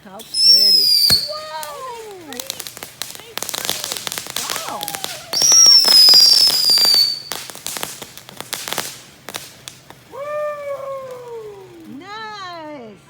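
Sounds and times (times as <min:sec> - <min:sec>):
firework whistle: 0:00.0 - 0:12.4
firework crackling: 0:00.0 - 0:13.0.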